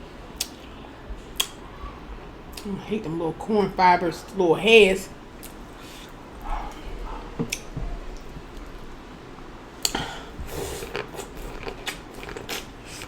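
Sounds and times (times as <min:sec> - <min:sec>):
wet chewing and lip smacks: 0:00.4 - 0:01.6, 0:05.4 - 0:13.0.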